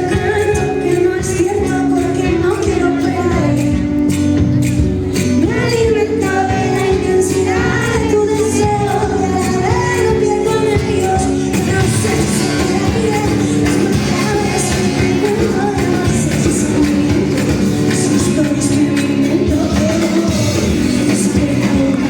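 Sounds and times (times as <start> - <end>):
woman singing: 0.0 - 4.3, 5.1 - 22.0
live band music: 0.0 - 22.0.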